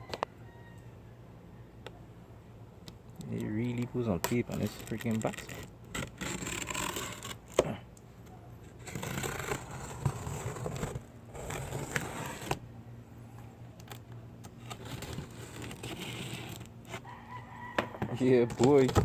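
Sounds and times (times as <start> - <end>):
faint low hum: 0.0 - 19.0
cardboard scraping and rustling: 3.7 - 7.8, 8.7 - 12.6, 14.5 - 17.1, 17.7 - 19.0
packing tape tearing: 3.8 - 7.8, 13.8 - 17.0.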